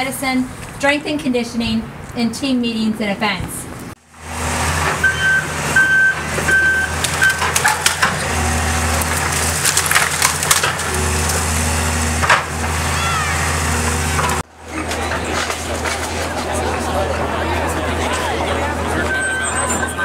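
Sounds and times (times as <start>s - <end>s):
diesel engine under load: 3.9s - 20.0s
backup alarm beeping: 5.0s - 7.5s, 18.9s - 20.0s
wood and debris cracking: 6.9s - 13.0s.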